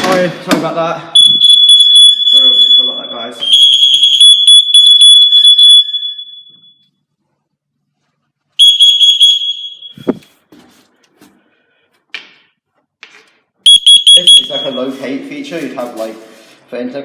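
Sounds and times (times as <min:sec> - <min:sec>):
high-pitched alarm tone: 0:01.2 - 0:06.9, 0:08.6 - 0:10.2, 0:13.7 - 0:15.0.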